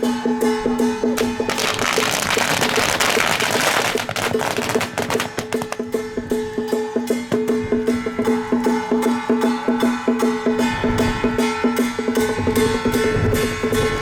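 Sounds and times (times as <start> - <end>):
wooden percussion strikes: 1.2 - 6.0.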